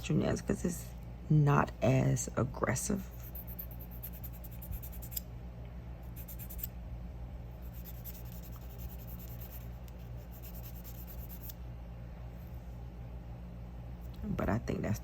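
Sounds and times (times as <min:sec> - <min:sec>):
nail file scratching fingernail: 0:03.1 - 0:05.2, 0:06.0 - 0:06.7, 0:07.6 - 0:11.6.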